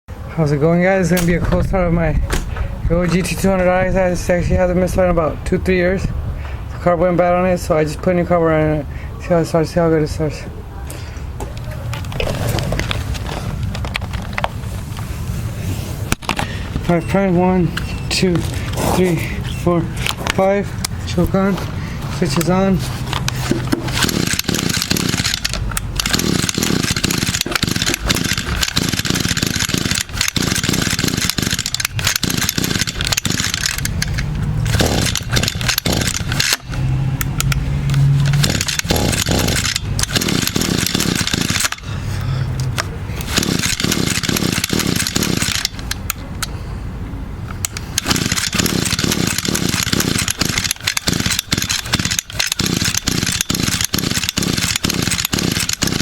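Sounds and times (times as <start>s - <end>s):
recoil starter rattling: 22.1s - 41.9s, 43.2s - 46.3s, 47.6s - 56.0s
engine cranking: 22.1s - 46.5s, 47.6s - 56.0s.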